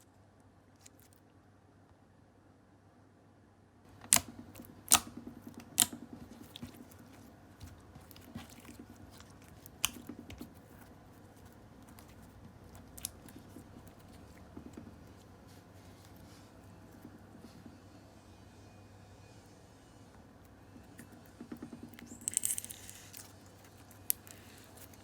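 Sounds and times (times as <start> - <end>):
slime popping and squelching: 4.0 - 15.2, 22.0 - 23.3.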